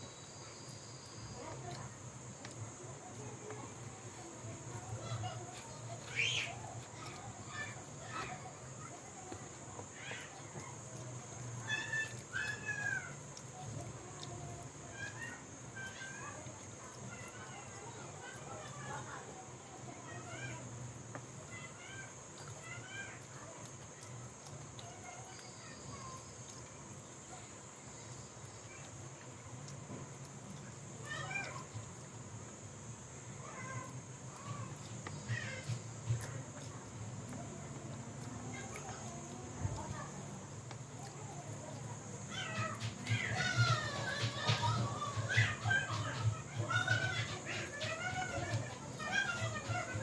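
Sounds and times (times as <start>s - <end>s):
animal calling: 9.9s - 14.2s, 41.0s - 50.0s.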